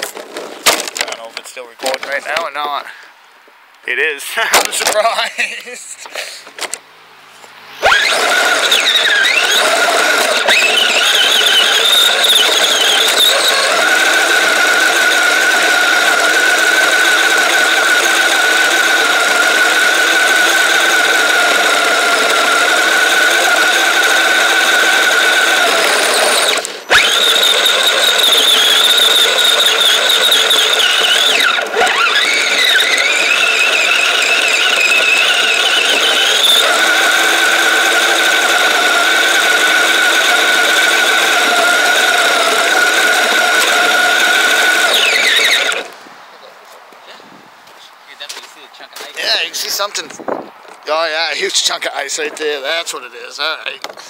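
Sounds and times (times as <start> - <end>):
rc vehicle motor whine: 7.8 - 46.0.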